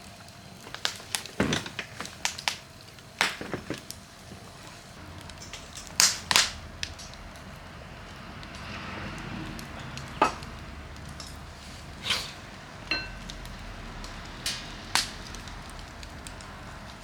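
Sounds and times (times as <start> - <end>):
wood fire crackling: 0.0 - 17.0
light metallic clink: 9.8 - 15.2.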